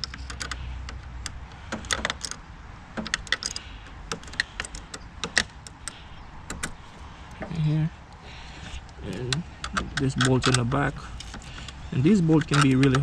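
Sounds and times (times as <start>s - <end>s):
hand tool metallic clicks: 3.0s - 6.8s, 8.8s - 13.0s.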